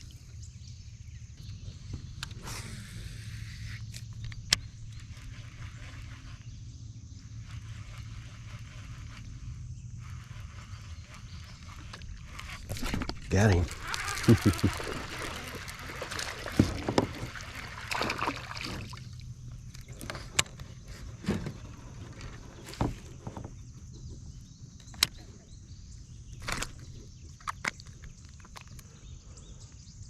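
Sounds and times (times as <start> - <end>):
gear knocking against boat: 11.0 - 24.2
water splashing and sloshing: 11.1 - 23.6.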